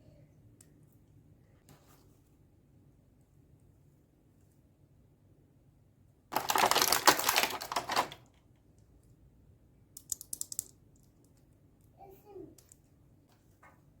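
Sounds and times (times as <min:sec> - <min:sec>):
plastic toy pieces clicking: 0:06.4 - 0:08.3, 0:10.0 - 0:11.1.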